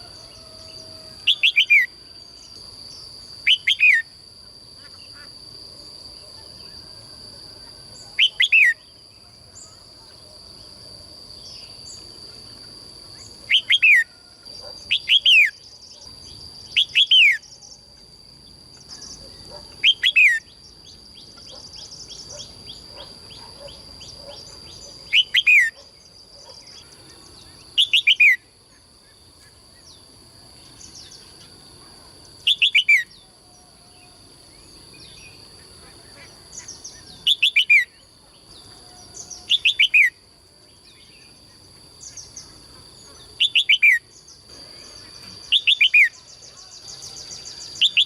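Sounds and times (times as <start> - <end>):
songbird whistled calls: 1.2 - 1.9, 3.4 - 4.1, 8.1 - 8.9, 13.5 - 14.1, 14.9 - 15.6, 16.7 - 17.7, 19.8 - 20.6, 25.1 - 25.8, 36.6 - 38.0, 43.4 - 44.1, 45.4 - 48.0.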